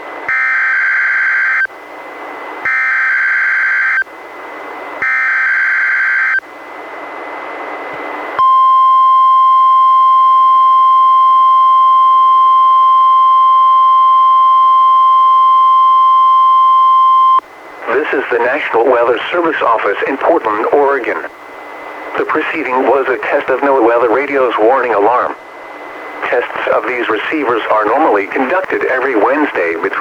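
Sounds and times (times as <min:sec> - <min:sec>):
steady warning alarm tone: 0:00.3 - 0:01.7, 0:02.6 - 0:04.1, 0:05.0 - 0:06.5, 0:08.4 - 0:19.4
radio hiss: 0:17.4 - 0:30.0.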